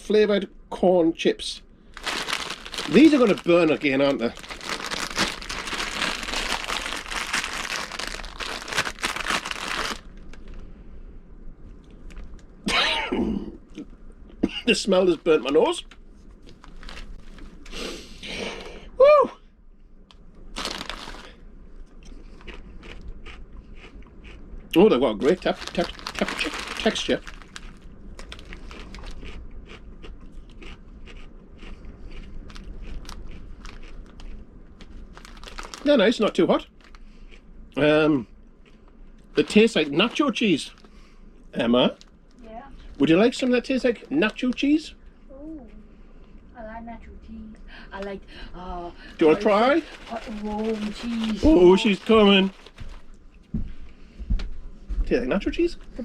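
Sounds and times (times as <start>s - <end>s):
chip bag crinkling: 2.0s - 10.6s, 15.1s - 17.7s, 20.5s - 21.4s, 25.1s - 29.4s, 32.4s - 37.0s, 39.4s - 40.9s, 42.8s - 44.8s, 49.2s - 53.2s.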